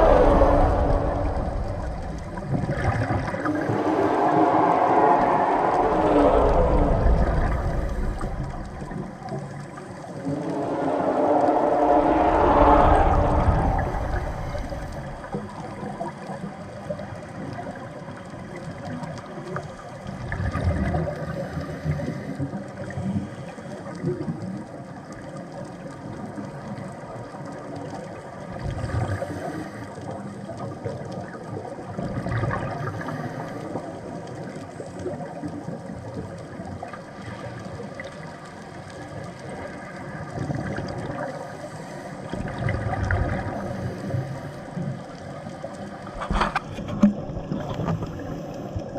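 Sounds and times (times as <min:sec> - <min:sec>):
faint steady tones: 0:00.0 - 0:15.6
underwater water noise: 0:00.0 - 0:48.9.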